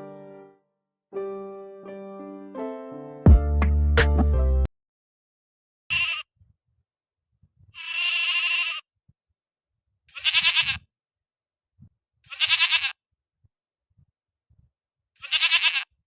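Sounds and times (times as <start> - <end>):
animal bleating: 5.9 - 6.3, 7.8 - 8.8, 10.1 - 10.9, 12.3 - 13.0, 15.2 - 16.0.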